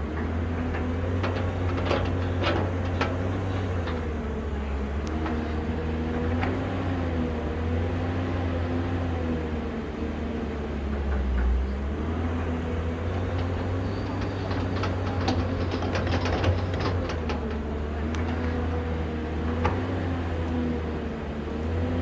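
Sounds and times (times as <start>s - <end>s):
excavator diesel engine running: 0.0s - 22.0s
sharp metal clanks and knocks: 13.0s - 18.7s.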